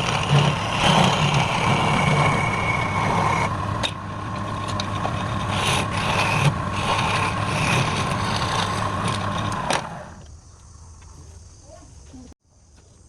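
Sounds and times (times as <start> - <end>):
wood lathe humming and whining: 0.0 - 10.2.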